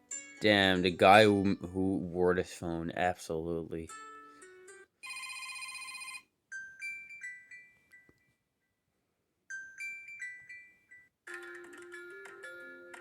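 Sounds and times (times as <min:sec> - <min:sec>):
phone ringtones: 0:05.0 - 0:06.2.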